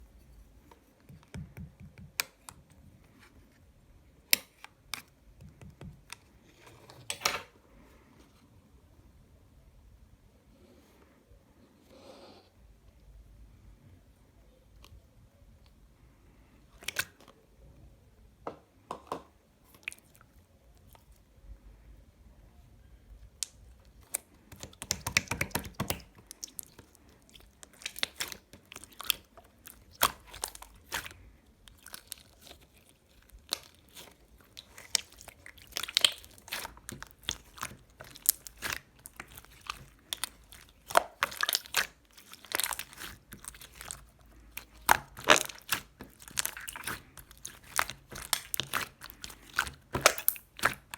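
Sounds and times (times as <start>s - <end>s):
slime squeezed by hand: 33.4s - 50.9s.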